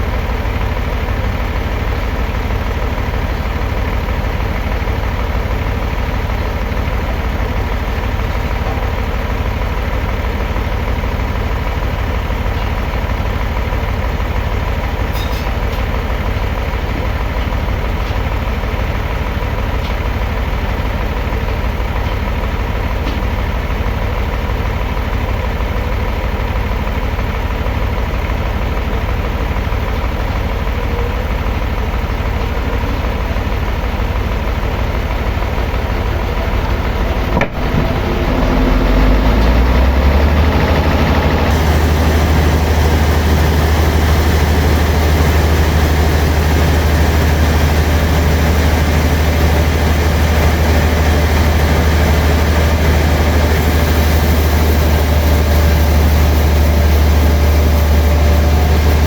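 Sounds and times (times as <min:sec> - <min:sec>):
sawmill engine humming: 0:00.0 - 0:59.0.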